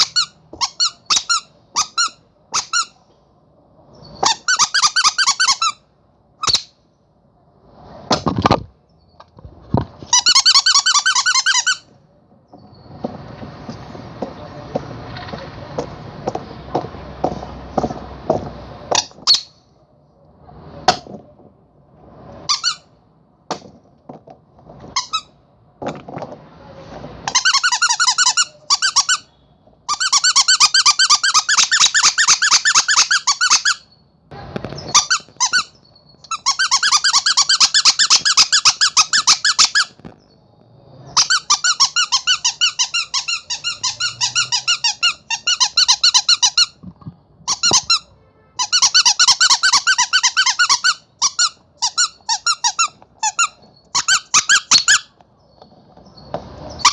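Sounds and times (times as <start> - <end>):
squeaky toy squeaking: 0.0 - 3.0, 4.0 - 6.8, 10.0 - 11.9, 18.9 - 19.6, 22.4 - 23.0, 24.8 - 25.4, 27.2 - 40.0, 41.1 - 46.8, 47.4 - 55.2.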